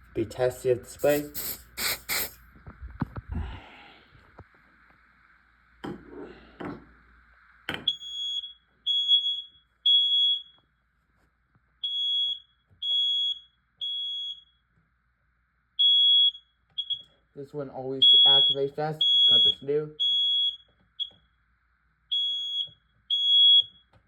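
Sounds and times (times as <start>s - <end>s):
aerosol spray hiss: 0.9s - 2.4s
smoke alarm high beeps: 7.8s - 10.7s, 11.8s - 14.6s, 15.8s - 17.2s, 18.0s - 21.3s, 22.1s - 23.9s.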